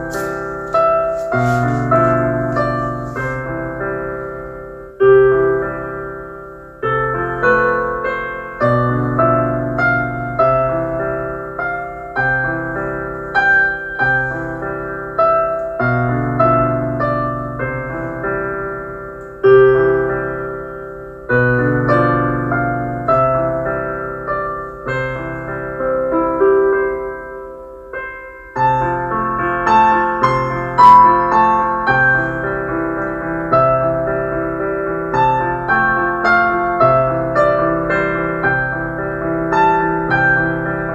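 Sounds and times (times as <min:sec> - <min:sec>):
gentle piano music: 0:00.0 - 0:40.9.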